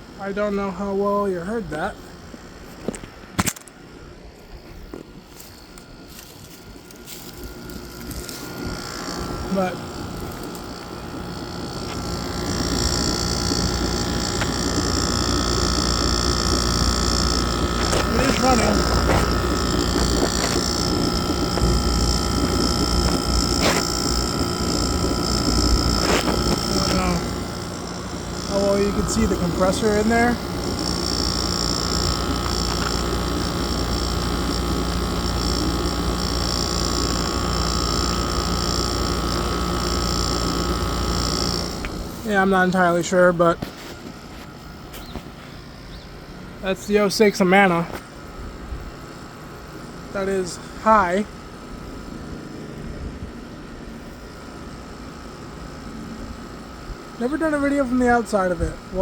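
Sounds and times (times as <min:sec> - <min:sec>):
air conditioner running: 0:00.0 - 0:59.0
high-pitched whine: 0:04.3 - 0:44.0.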